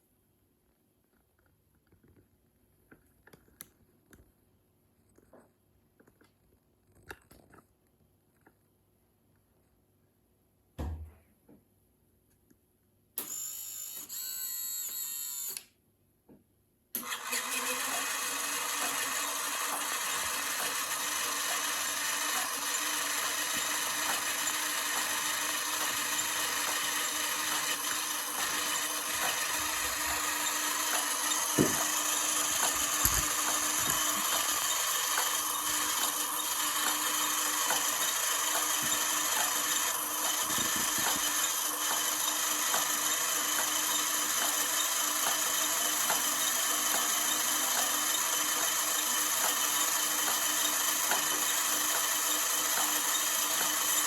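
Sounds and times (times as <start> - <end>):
small power tool motor humming: 17.0 - 54.0.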